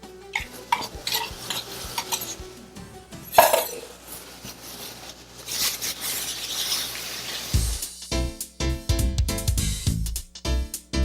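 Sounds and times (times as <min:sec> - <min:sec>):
utensil scraping in frying pan: 0:00.3 - 0:08.1
utensil clank: 0:00.4 - 0:02.6, 0:03.2 - 0:03.9.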